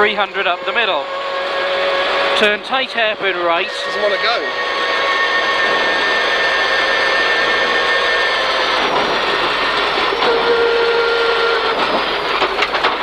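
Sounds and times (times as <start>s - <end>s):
people talking: 0.0s - 1.1s, 2.4s - 4.5s
car engine under load: 0.0s - 13.0s
tyre and road noise: 0.0s - 13.0s.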